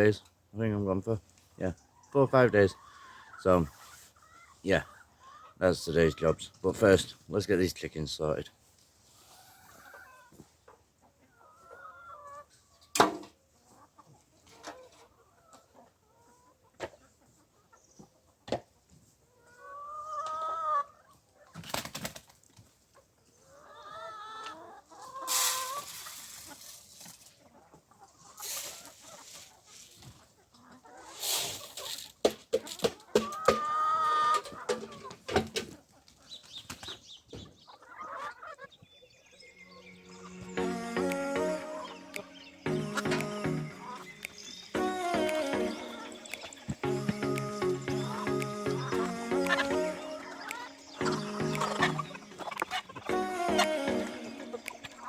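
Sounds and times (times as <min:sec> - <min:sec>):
chickens clucking: 0:00.0 - 0:55.0
chickens squawking: 0:01.8 - 0:06.6, 0:09.2 - 0:12.8, 0:19.3 - 0:21.8, 0:23.4 - 0:26.6, 0:33.1 - 0:35.2, 0:35.8 - 0:38.9, 0:39.6 - 0:55.0.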